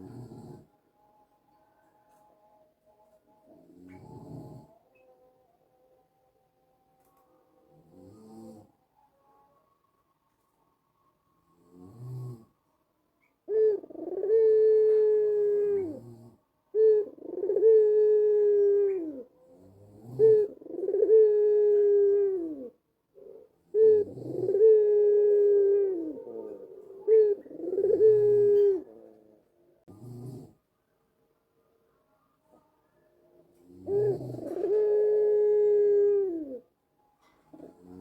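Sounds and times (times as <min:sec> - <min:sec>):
dove cooing: 0:00.0 - 0:00.7, 0:03.5 - 0:05.0, 0:13.2 - 0:30.6, 0:33.5 - 0:38.0.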